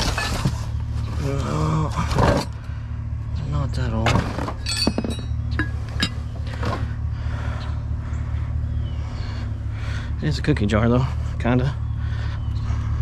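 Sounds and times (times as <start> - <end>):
vehicle idling hum: 0.0 - 13.0.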